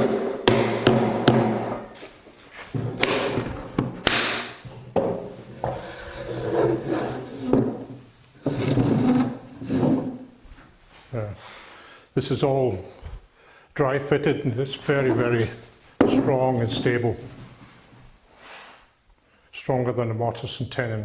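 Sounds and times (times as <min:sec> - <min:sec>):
wooden knocks and thuds: 0:00.0 - 0:02.0, 0:02.7 - 0:06.0, 0:07.4 - 0:10.3, 0:15.2 - 0:16.4
wood rubbing and scraping: 0:01.2 - 0:11.0, 0:14.8 - 0:18.1.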